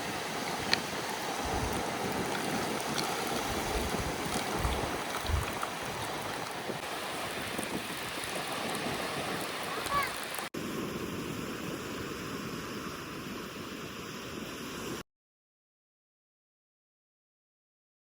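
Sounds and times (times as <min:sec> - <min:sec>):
sea waves washing: 0:00.0 - 0:10.5
wind buffeting microphone: 0:00.0 - 0:10.5.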